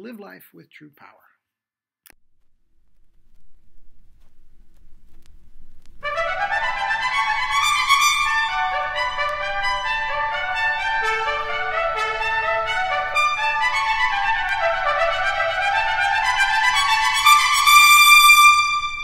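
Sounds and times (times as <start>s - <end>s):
instruments playing underneath: 4.0s - 19.0s
trumpet melody: 6.0s - 19.0s.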